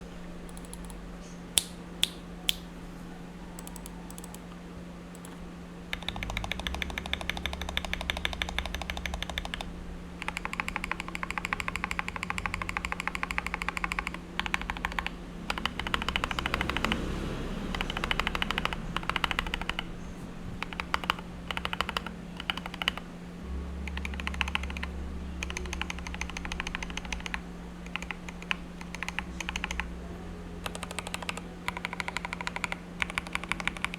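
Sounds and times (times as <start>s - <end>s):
mechanical keyboard typing: 0.5s - 1.0s, 3.6s - 4.4s, 5.1s - 17.1s, 17.7s - 19.9s, 20.6s - 23.0s, 23.9s - 29.9s, 30.6s - 33.9s
low hum: 2.2s - 33.9s.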